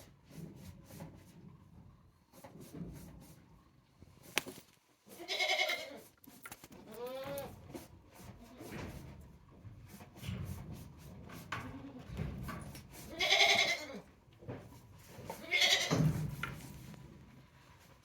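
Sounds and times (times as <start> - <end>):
goats bleating: 5.2 - 6.0, 13.1 - 14.0, 15.4 - 15.9.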